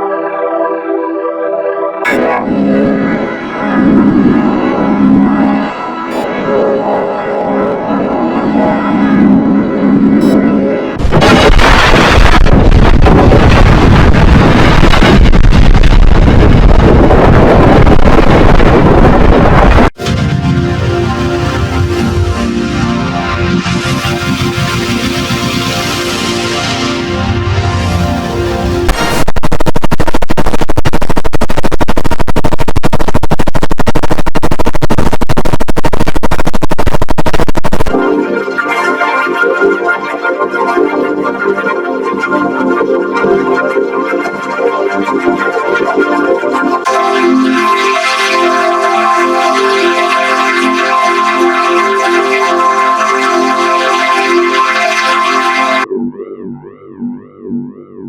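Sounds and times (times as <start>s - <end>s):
distorted cartoon burp rumble: 2.0s - 6.2s, 55.9s - 58.0s
processed burp with musical pitch: 2.0s - 6.3s
distorted burp stutter: 2.0s - 38.2s, 46.8s - 58.0s
organ-like chords: 46.9s - 55.9s.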